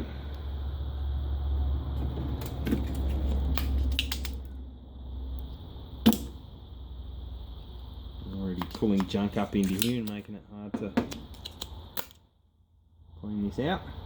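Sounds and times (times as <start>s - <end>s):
low hum: 0.0s - 8.8s
solder sucker snap: 6.0s - 6.4s.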